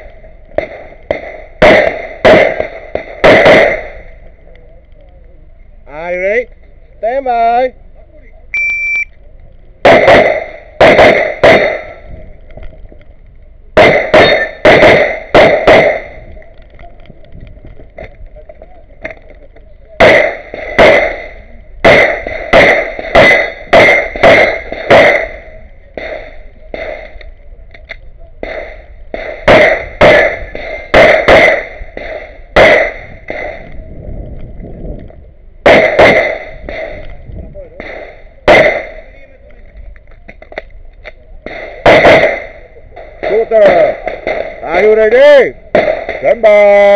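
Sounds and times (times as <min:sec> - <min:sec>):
pistol shots: 0:00.6 - 0:04.0, 0:09.8 - 0:12.1, 0:13.8 - 0:16.3, 0:20.0 - 0:27.2, 0:28.4 - 0:33.8, 0:35.6 - 0:37.1, 0:37.8 - 0:39.2, 0:41.4 - 0:44.6, 0:45.7 - 0:46.4.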